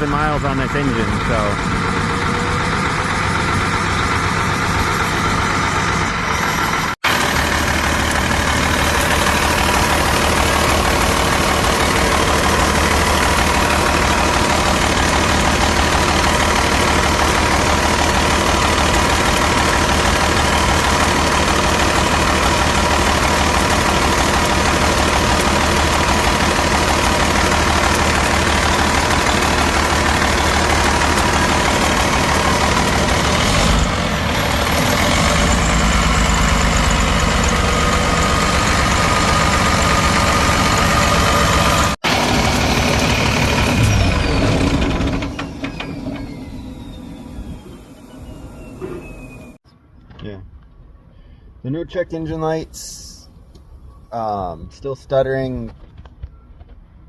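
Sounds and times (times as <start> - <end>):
diesel engine idling rough: 0.0 - 49.6.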